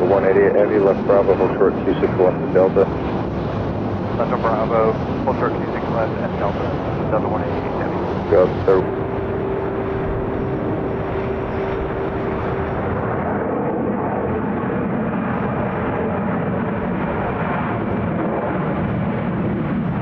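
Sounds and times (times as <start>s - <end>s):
steady hum: 0.0s - 13.4s, 16.7s - 18.0s
jet engines rushing: 0.0s - 20.0s.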